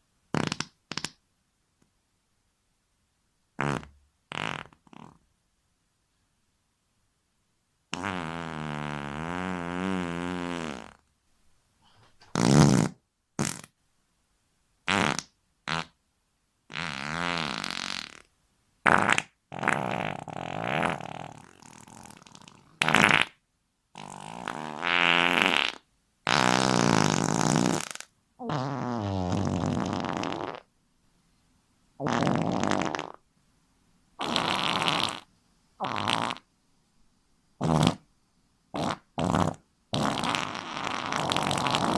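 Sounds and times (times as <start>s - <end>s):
fart sound effects: 0.3s - 1.2s, 3.6s - 5.2s, 7.9s - 11.0s, 12.2s - 13.8s, 14.9s - 16.0s, 16.7s - 23.4s, 24.0s - 30.7s, 32.0s - 33.2s, 34.2s - 36.5s, 37.6s - 38.0s, 38.8s - 41.9s.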